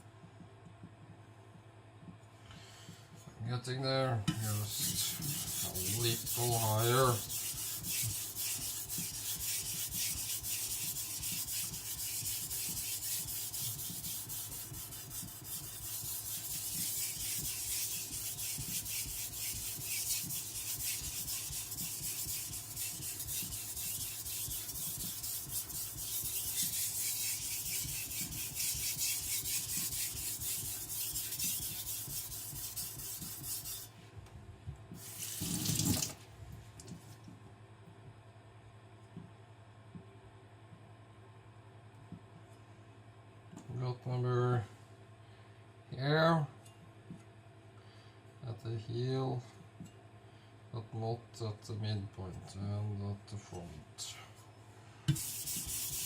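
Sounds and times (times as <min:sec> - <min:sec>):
knife scraping on whetstone: 0:04.5 - 0:33.9, 0:55.1 - 0:56.0.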